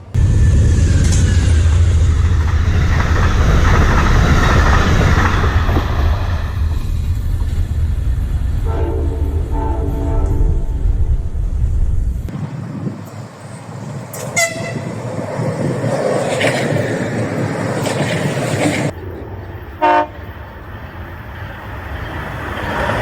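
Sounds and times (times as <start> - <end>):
loud low rumble: 0.0 - 13.0
train rolling by: 0.0 - 23.0
train horn toot: 8.6 - 11.2, 14.1 - 15.0, 19.8 - 20.3.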